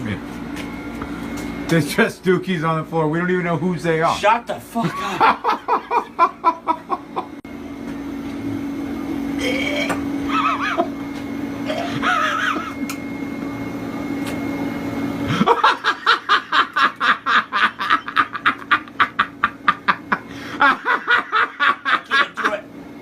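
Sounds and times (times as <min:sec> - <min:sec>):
person laughing hard: 0:04.8 - 0:07.4, 0:09.4 - 0:11.0, 0:11.6 - 0:12.8, 0:15.3 - 0:22.6.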